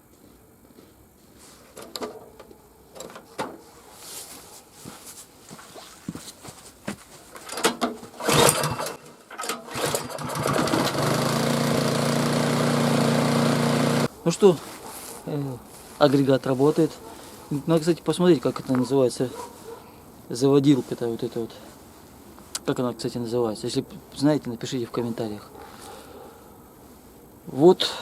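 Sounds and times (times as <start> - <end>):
pull-cord starter pulled: 7.5 - 14.1
small engine running: 8.2 - 9.0, 9.7 - 14.1.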